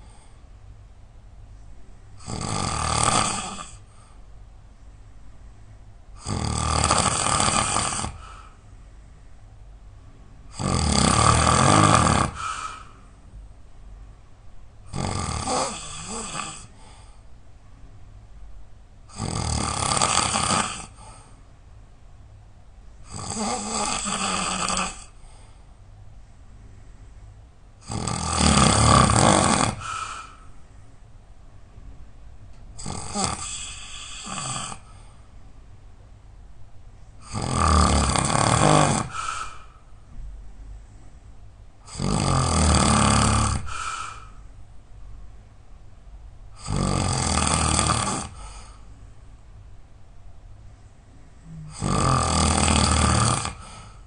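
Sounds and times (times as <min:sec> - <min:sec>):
person snoring loudly: 0:02.2 - 0:03.9, 0:06.2 - 0:08.4, 0:10.5 - 0:12.9, 0:14.9 - 0:16.7, 0:19.1 - 0:21.0, 0:23.0 - 0:25.2, 0:27.8 - 0:30.4, 0:32.8 - 0:34.9, 0:37.2 - 0:39.7, 0:41.8 - 0:44.3, 0:46.6 - 0:48.8, 0:51.4 - 0:54.0.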